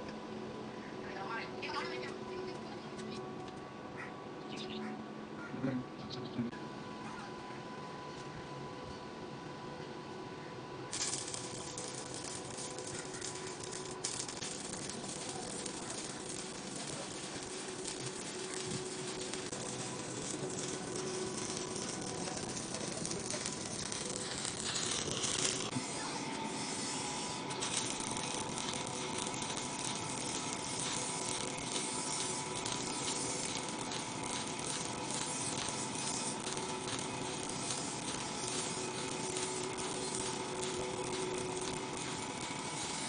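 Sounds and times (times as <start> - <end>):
welding arc crackling: 10.9 - 43.0.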